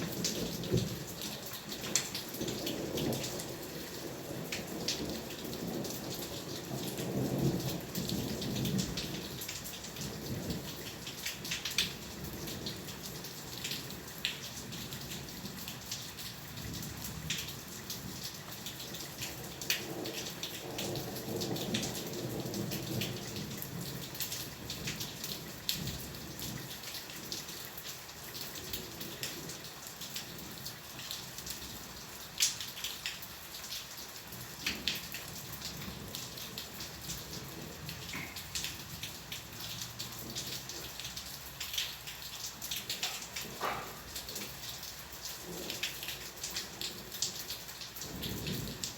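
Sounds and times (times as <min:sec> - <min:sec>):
steady rain ticking: 0:00.0 - 0:48.9
distant thunder rumble: 0:02.2 - 0:10.7, 0:45.3 - 0:47.1, 0:48.0 - 0:48.9.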